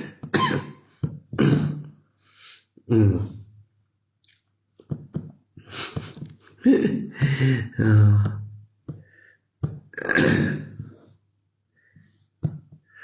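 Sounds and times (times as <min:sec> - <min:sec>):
man breathing: 0:02.2 - 0:02.7, 0:07.2 - 0:07.8, 0:09.0 - 0:09.5
man making indistinct voiced sounds: 0:02.8 - 0:03.5, 0:05.9 - 0:08.5.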